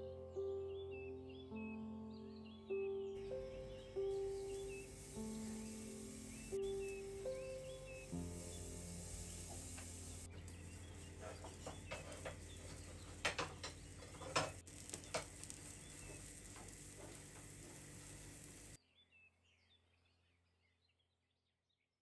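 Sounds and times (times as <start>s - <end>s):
food sizzling in a frying pan: 3.2s - 18.8s.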